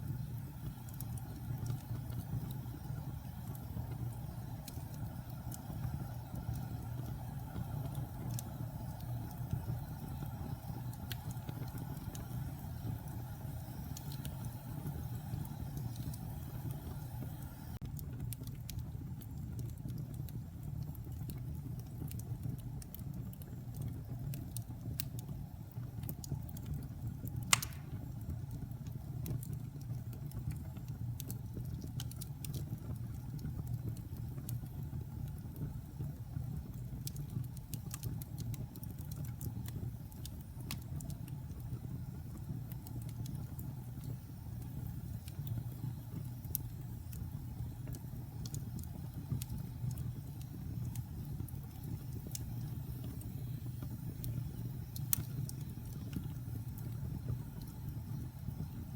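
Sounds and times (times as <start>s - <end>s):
fire crackling: 0.0s - 58.9s
fire flames rumbling: 0.0s - 58.9s
fire popping: 0.0s - 58.9s.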